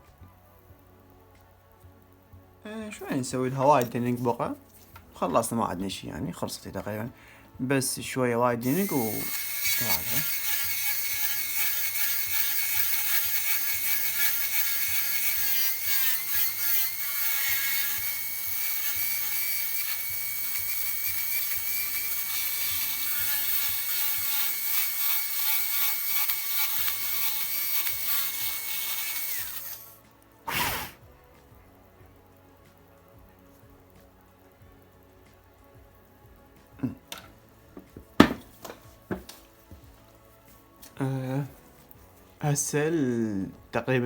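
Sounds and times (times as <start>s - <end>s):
dental drill whining: 8.6s - 30.0s.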